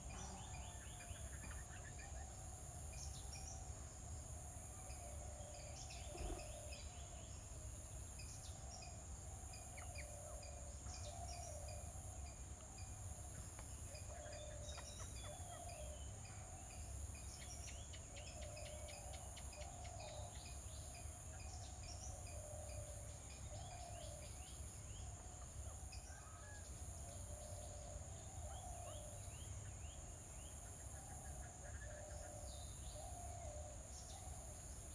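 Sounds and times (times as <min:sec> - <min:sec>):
small birds chirping: 0:05.2 - 0:09.0.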